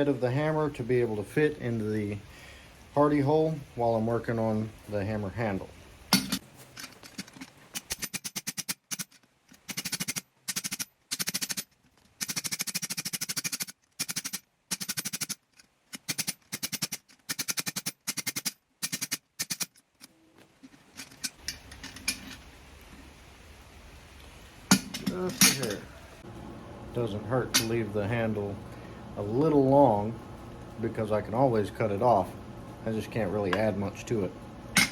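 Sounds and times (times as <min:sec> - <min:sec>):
faint low hum: 0:20.0 - 0:34.9.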